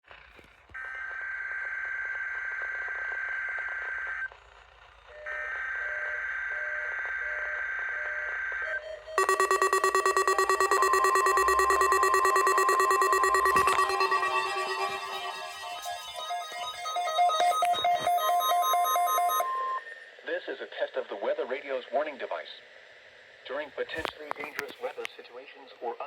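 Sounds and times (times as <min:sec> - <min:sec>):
pulsing multi-pitch alert tone: 0:09.2 - 0:19.6
buzzing data tone: 0:09.2 - 0:19.7
pulsing low beep: 0:09.2 - 0:19.8.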